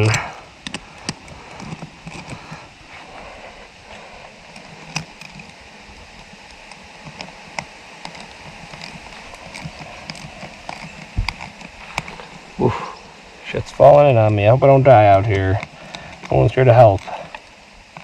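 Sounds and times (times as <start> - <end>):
small clicks and scrapes: 0.0 - 12.6, 15.0 - 18.0
steady hiss: 0.0 - 18.0.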